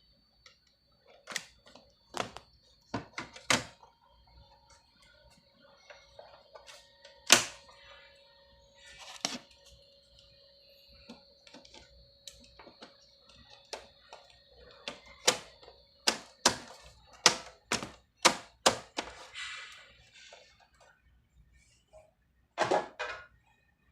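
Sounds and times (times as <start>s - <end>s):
computer case clicks and knocks: 2.2s - 3.8s, 14.9s - 19.2s.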